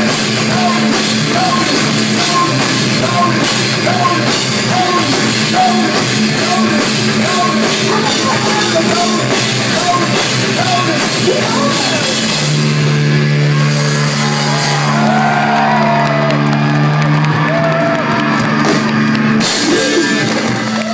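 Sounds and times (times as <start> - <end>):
person singing: 0.0 - 12.3
electronic rock band playing live: 0.0 - 20.9.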